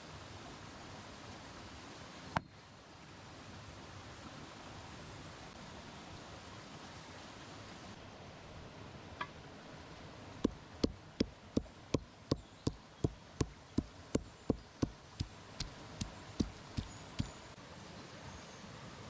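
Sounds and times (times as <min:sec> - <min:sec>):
knife chopping on wooden board: 0:12.3 - 0:17.3.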